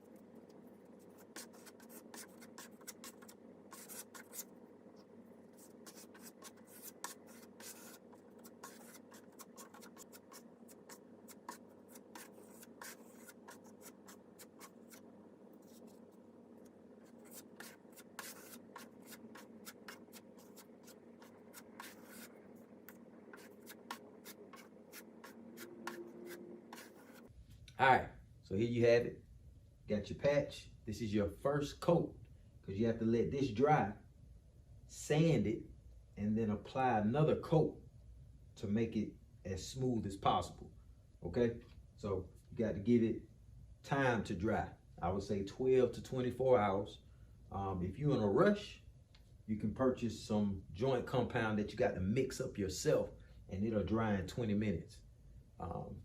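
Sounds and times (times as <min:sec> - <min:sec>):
steady low hum: 0:00.0 - 0:56.0
putty knife scraping: 0:00.5 - 0:16.0, 0:17.0 - 0:27.3.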